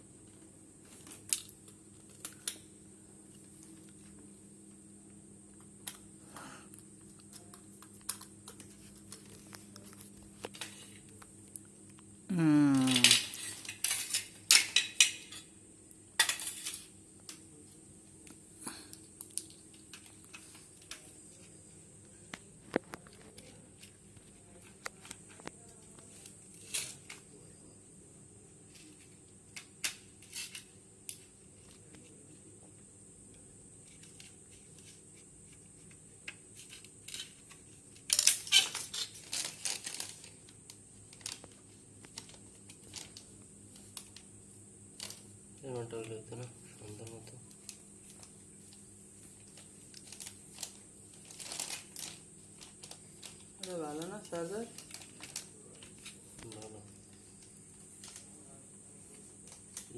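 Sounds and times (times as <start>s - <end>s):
clicks and clinks of small objects: 12.7s - 15.5s, 36.6s - 40.3s.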